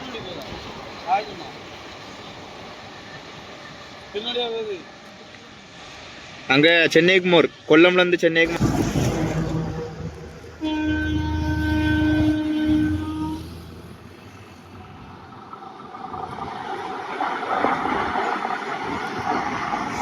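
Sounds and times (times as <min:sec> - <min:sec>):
train rumble and clatter: 0:00.0 - 0:20.0
train horn blast: 0:08.5 - 0:14.0.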